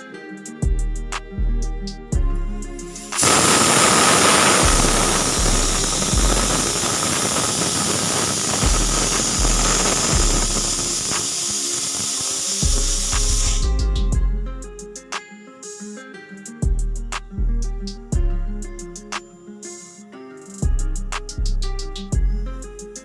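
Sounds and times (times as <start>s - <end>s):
background music with beat: 0.0s - 23.0s
pressure cooker whistle hissing: 2.9s - 13.8s.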